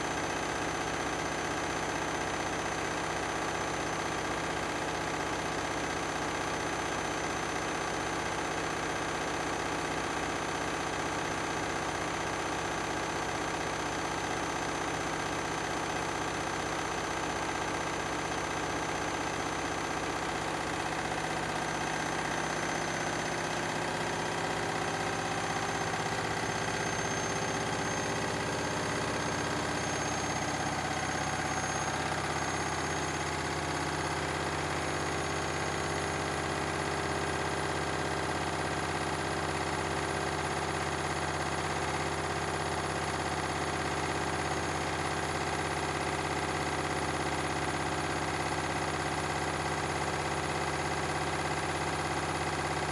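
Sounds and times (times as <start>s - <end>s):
washing machines spinning: 12.8s - 41.4s
high motor whine: 20.8s - 33.4s.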